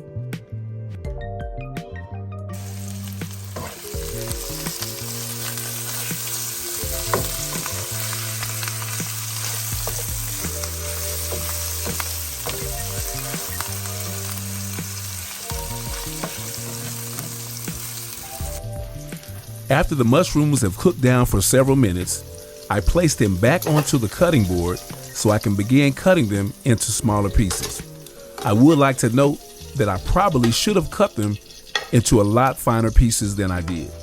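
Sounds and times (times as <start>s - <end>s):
soft background music: 0.0s - 34.0s
mushrooms sizzling in a pan: 2.6s - 34.0s
stirring taps: 3.1s - 18.3s.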